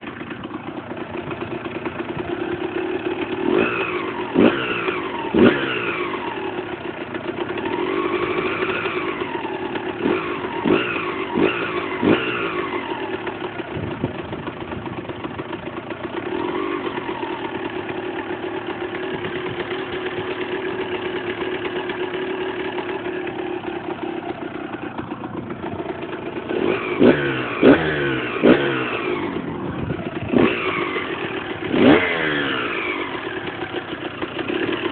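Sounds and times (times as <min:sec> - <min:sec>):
motorcycle engine idling: 0:00.0 - 0:34.9
engine throttle blips: 0:24.0 - 0:34.9.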